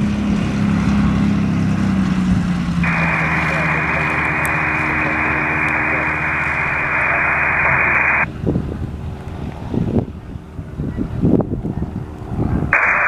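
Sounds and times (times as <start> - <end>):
wind buffeting microphone: 0.0 - 13.0
radio static hiss: 2.8 - 8.3, 12.7 - 13.0.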